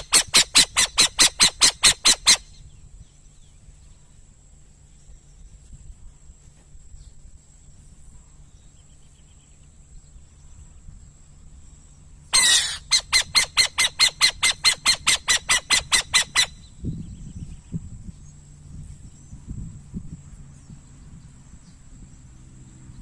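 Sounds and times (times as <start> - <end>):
owl screech: 0.0 - 2.5, 12.4 - 16.6
owl chattering: 0.0 - 2.7, 12.4 - 16.7.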